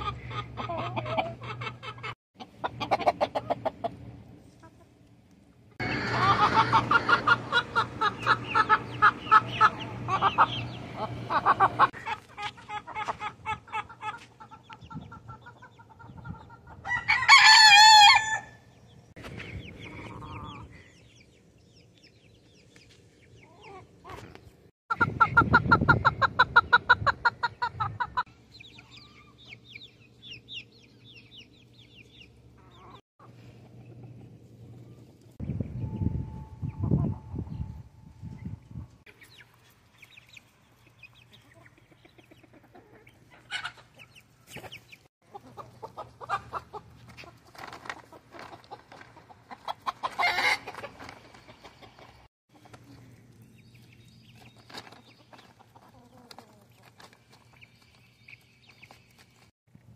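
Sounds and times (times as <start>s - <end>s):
chickens clucking: 0.0s - 17.1s, 19.0s - 37.7s, 38.3s - 59.5s
rooster crowing: 16.8s - 18.6s.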